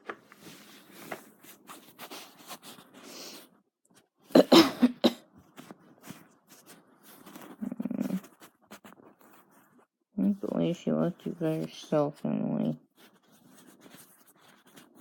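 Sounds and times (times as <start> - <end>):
person coughing harshly: 4.4 - 5.2
person speaking: 7.5 - 8.3, 10.2 - 12.8
throat sounds: 7.6 - 8.2.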